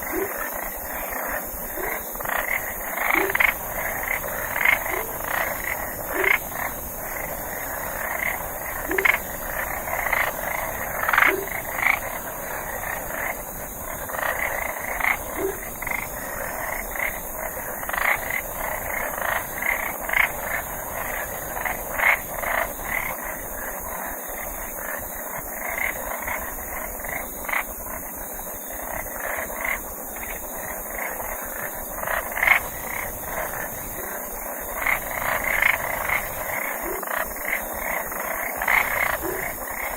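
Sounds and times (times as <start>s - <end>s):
frogs croaking: 0.0s - 39.9s
steady high hiss: 0.0s - 39.9s.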